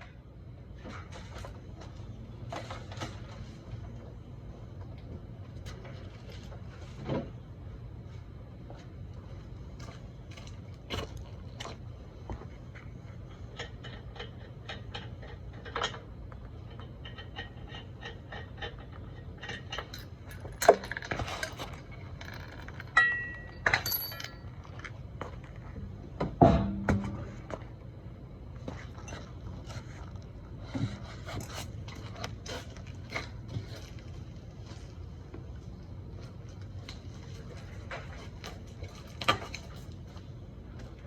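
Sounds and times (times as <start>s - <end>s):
hand tools and metal parts clinking: 19.4s - 24.9s
short ringing metal clink: 23.0s - 24.5s.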